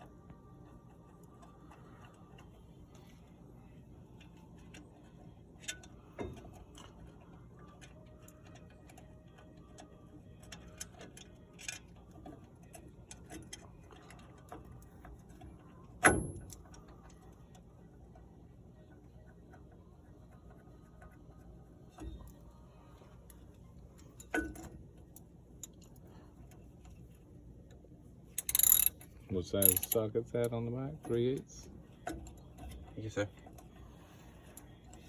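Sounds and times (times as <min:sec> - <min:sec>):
metal brake parts clinking: 0:28.4 - 0:30.1.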